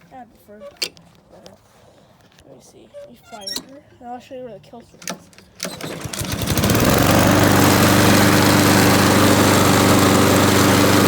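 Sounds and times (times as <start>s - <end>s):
lawnmower engine starting and running: 5.0s - 11.0s.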